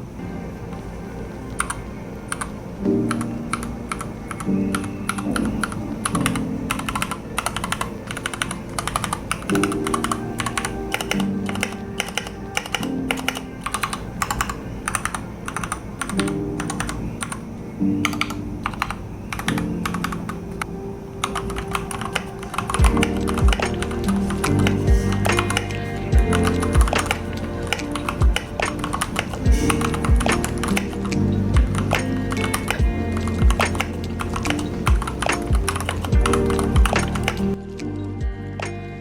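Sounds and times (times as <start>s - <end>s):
background music with held chords: 0.0s - 39.0s
mechanical keyboard typing: 3.1s - 17.4s, 21.2s - 37.5s.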